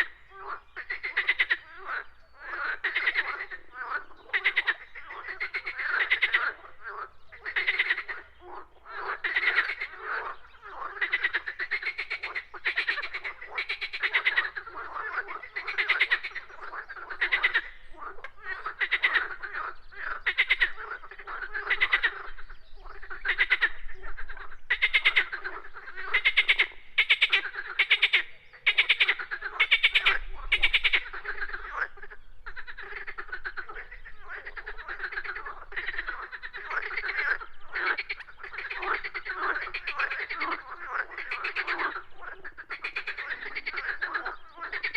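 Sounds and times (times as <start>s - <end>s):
frogs croaking in chorus: 0.0s - 44.9s.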